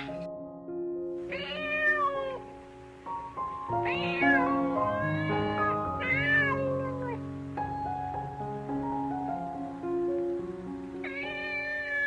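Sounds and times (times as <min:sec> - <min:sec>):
background music: 0:00.0 - 0:12.0
cat meowing: 0:01.2 - 0:02.5, 0:03.7 - 0:07.2, 0:11.0 - 0:12.0.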